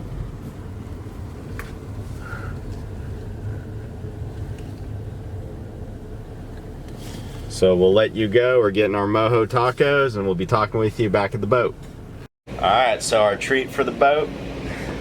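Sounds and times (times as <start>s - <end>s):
motor vehicle rumble: 0.0s - 15.0s.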